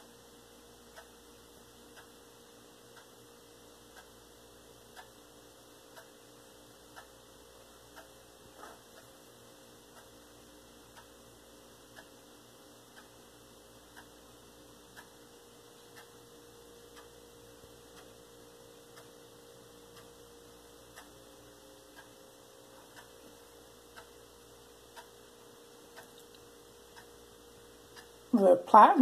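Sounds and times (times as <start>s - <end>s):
clock ticking: 0.0s - 29.0s
low steady hum: 0.0s - 29.0s.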